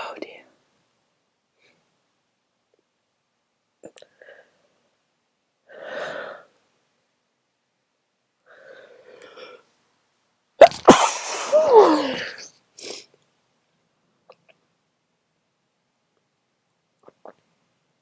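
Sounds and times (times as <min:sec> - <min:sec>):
breathy sounds: 0:10.6 - 0:13.0
person sneezing: 0:10.6 - 0:13.0.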